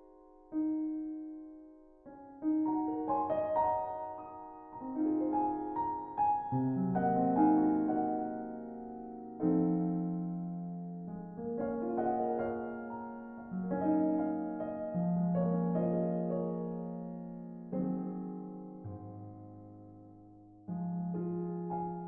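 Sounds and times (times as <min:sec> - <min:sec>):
slow solo piano music: 0:00.0 - 0:22.0.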